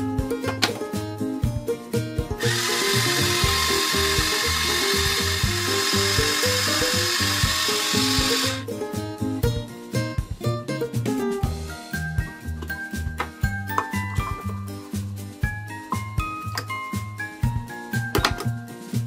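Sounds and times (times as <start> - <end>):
bouncy background music: 0.0 - 19.0
loud mechanical whirring: 2.4 - 8.6.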